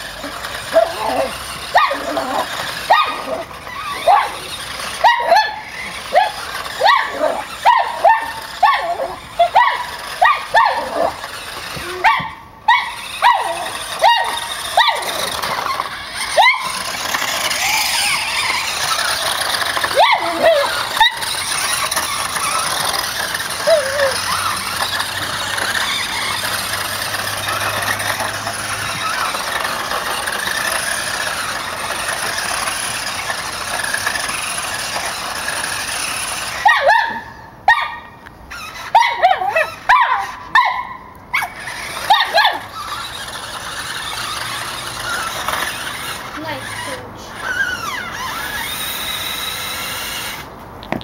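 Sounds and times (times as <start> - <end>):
remote-control car motor running: 0.0 - 51.0
dog barking high-pitched: 0.2 - 15.3, 16.2 - 16.8, 19.8 - 21.5, 36.6 - 38.1, 38.8 - 42.7.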